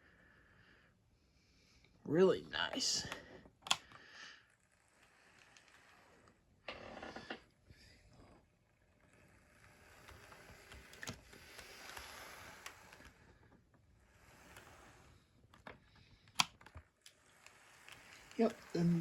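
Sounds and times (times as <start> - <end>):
model locomotive motor whirring: 3.6 - 7.2, 8.0 - 19.0.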